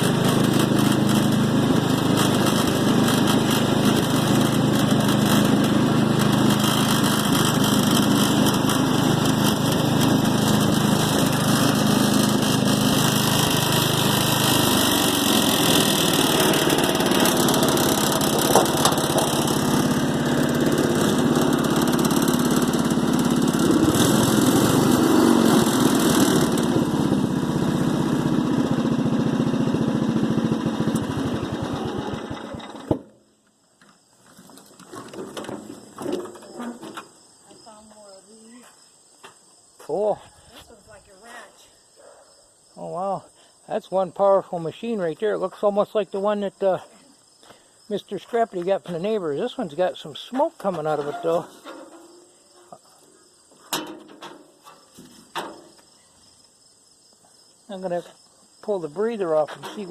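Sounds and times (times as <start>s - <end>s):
lawn mower engine running: 0.0s - 33.3s, 34.2s - 37.2s, 48.0s - 55.8s, 57.7s - 59.9s.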